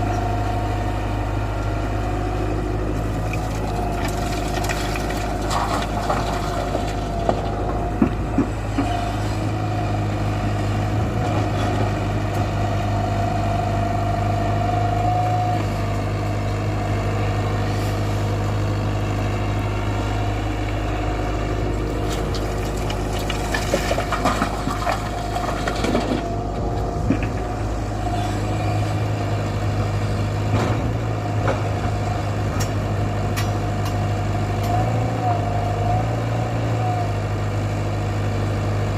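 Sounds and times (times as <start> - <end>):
excavator diesel engine whining: 0.0 - 38.9
knocks and clanks: 4.0 - 9.0.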